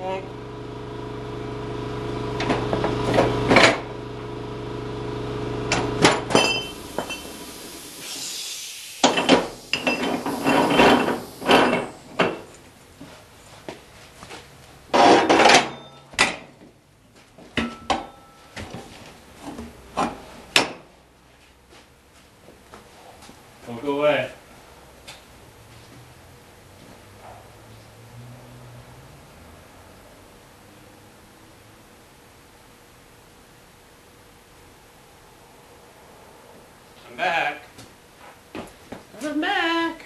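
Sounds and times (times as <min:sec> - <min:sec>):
steady hum: 0:00.0 - 0:21.1
metal tools knocking and clanking: 0:15.0 - 0:16.5, 0:17.6 - 0:18.4.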